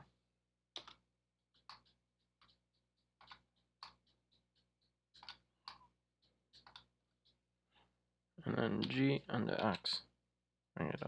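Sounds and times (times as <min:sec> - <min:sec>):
keyboard and mouse clicking: 0:00.7 - 0:02.6, 0:03.2 - 0:04.1, 0:05.1 - 0:05.9, 0:06.5 - 0:06.9, 0:08.7 - 0:09.8.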